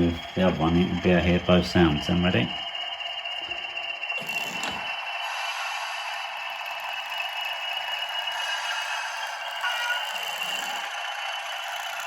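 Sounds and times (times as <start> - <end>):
recorded diesel engine drone: 0.0 - 12.0.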